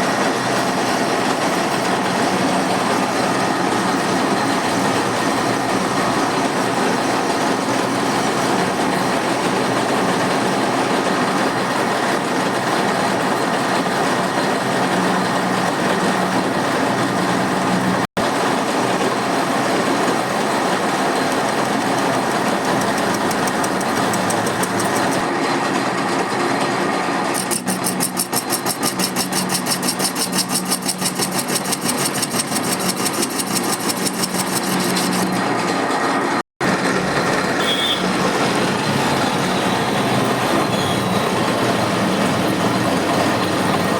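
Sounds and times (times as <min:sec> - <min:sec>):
fast regular pulsing: 0:20.5 - 0:25.2, 0:27.3 - 0:35.5
machine tool humming and hissing: 0:27.4 - 0:35.5.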